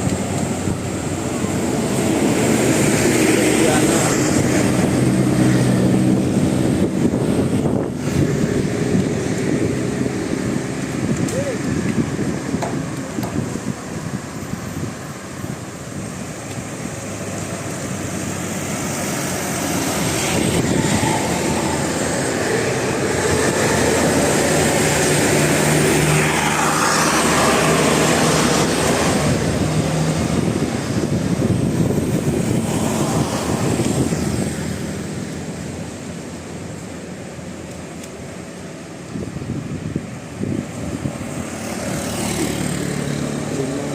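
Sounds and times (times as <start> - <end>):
bus passing by: 0.0 - 43.9.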